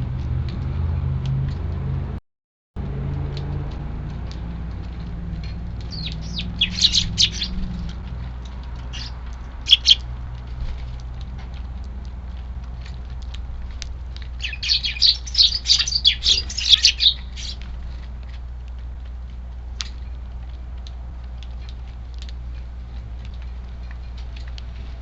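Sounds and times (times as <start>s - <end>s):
light ticks: 3.0s - 14.4s, 17.1s - 25.0s
sparrows chirping: 4.6s - 10.8s, 12.8s - 18.1s.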